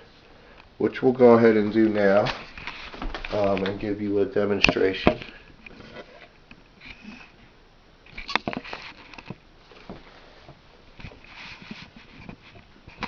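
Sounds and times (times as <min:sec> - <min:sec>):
handling clicks and rustles: 0:01.6 - 0:07.0.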